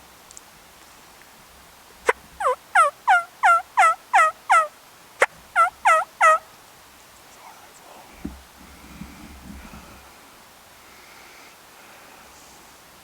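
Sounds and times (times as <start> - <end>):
turkey yelping: 2.4 - 6.4.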